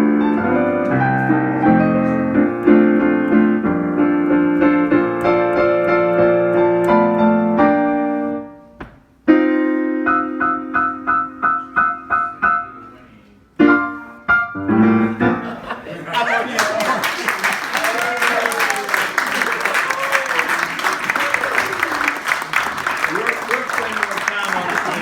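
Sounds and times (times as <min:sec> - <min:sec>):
piano playing chords and melody: 0:00.0 - 0:13.0, 0:13.6 - 0:15.9.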